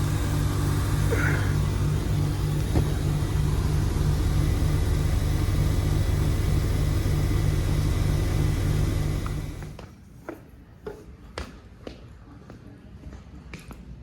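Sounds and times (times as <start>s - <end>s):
heat pump unit humming: 0.0s - 9.9s.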